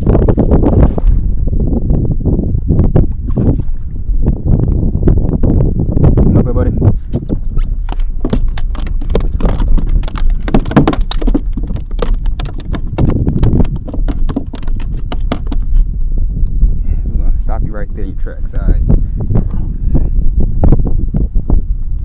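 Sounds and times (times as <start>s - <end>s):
low rumble: 0.0s - 22.0s
knocks against a kayak: 7.1s - 15.8s.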